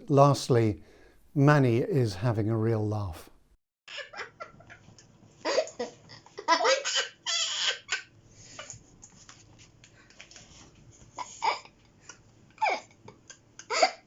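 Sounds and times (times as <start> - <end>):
small child laughing: 3.9 - 8.8, 11.1 - 11.8, 12.6 - 14.0.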